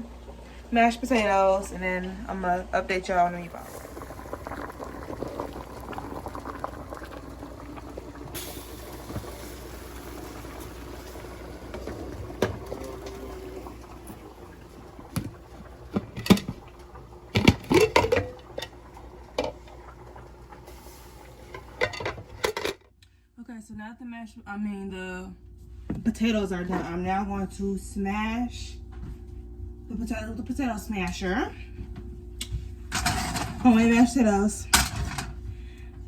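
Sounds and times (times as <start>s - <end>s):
pot of water boiling: 0.0s - 22.8s
pots and utensils clanking: 10.6s - 14.2s, 15.1s - 16.6s, 17.3s - 18.8s, 21.4s - 22.9s, 32.9s - 33.8s, 34.7s - 35.4s.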